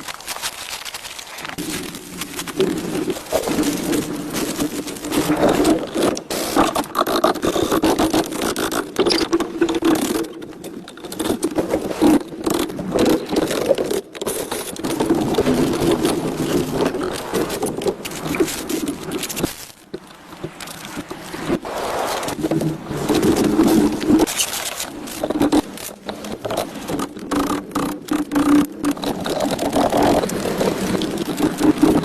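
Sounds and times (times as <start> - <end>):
rough scraping: 0.0 - 10.3.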